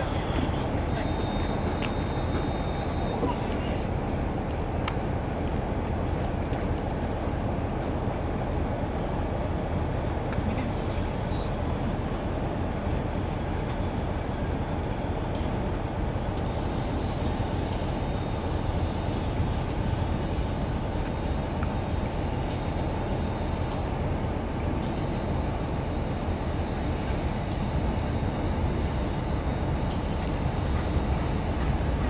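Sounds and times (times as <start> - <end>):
faint high whine: 0.0 - 3.9
train rumble: 0.0 - 32.0.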